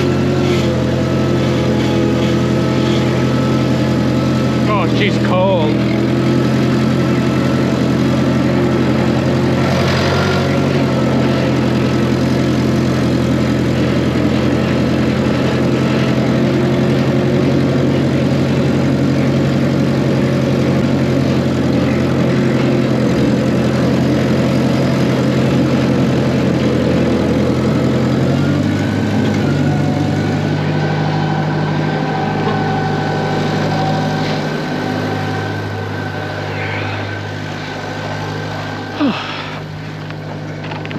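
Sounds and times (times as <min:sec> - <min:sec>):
engine running steadily: 0:00.0 - 0:40.9.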